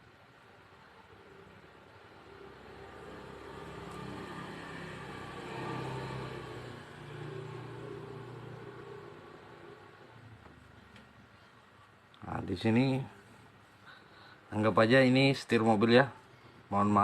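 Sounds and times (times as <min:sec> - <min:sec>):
motor vehicle passing by: 0:02.1 - 0:10.4.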